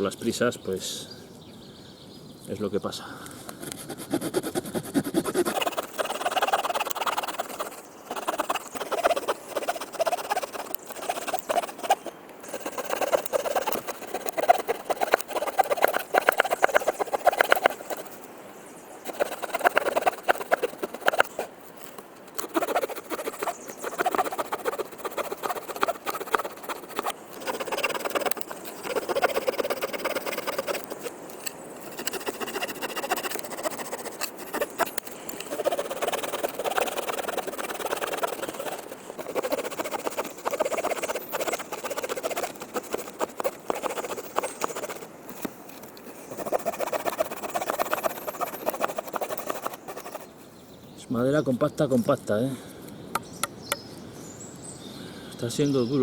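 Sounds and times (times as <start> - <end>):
hand saw rasping through wood: 3.8 - 18.1, 19.1 - 21.5, 22.4 - 31.0, 31.8 - 45.0, 46.3 - 50.2.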